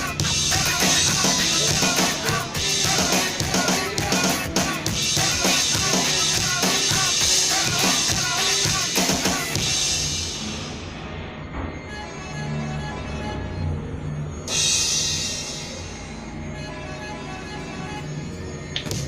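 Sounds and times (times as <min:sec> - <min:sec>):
drum kit playing: 0:00.0 - 0:10.8
backing music track: 0:00.0 - 0:19.0.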